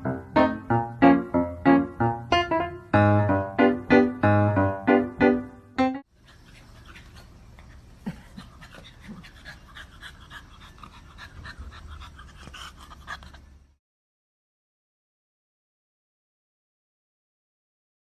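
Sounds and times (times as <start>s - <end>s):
dog panting: 6.2s - 13.6s.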